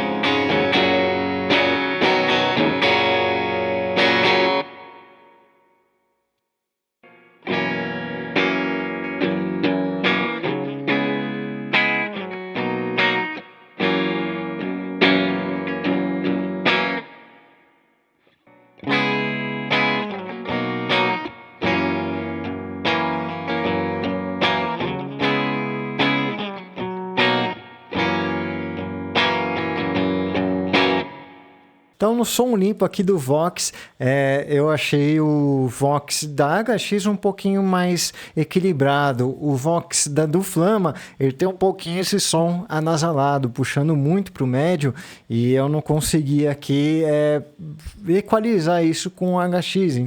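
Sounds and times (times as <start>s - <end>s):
clean electric guitar chords: 0.0s - 5.8s, 7.0s - 17.8s, 18.5s - 31.9s.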